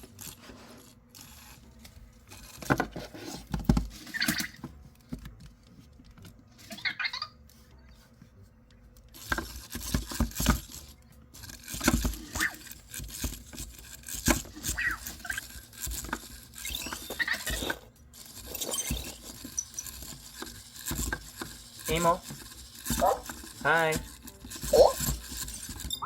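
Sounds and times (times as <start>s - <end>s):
robot motor clicks and taps: 9.0s - 26.0s.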